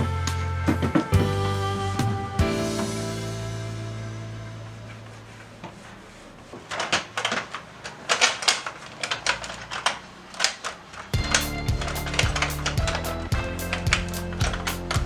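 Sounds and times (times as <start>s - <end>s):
background music: 0.0s - 5.0s, 11.2s - 15.0s.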